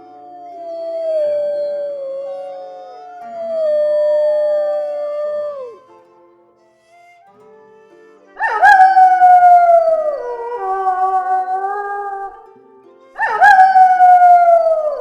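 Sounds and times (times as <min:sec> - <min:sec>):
wolf howling: 0:00.0 - 0:05.8, 0:08.4 - 0:12.4, 0:13.2 - 0:15.0
soft held background music: 0:00.0 - 0:15.0.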